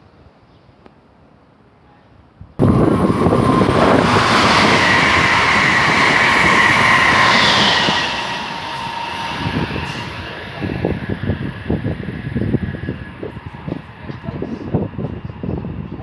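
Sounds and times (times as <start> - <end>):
electric train passing: 2.6 - 16.0.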